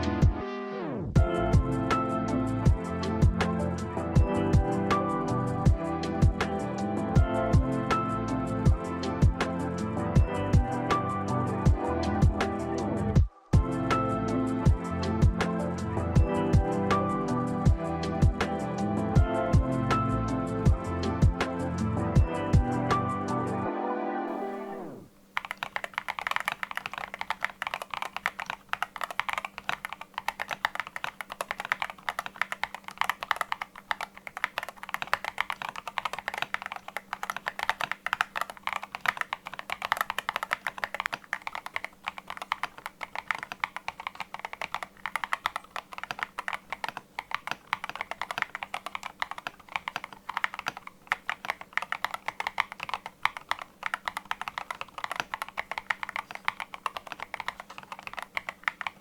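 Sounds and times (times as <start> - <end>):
fast typing on mechanical keyboard: 24.4 - 59.0.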